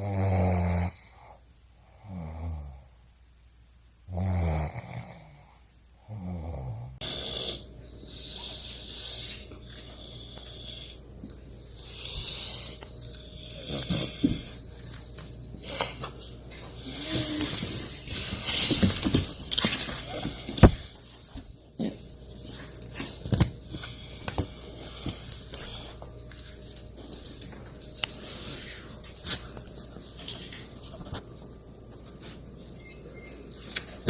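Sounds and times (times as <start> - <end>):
person snoring: 0.0 - 2.9, 4.1 - 9.1, 13.4 - 14.5.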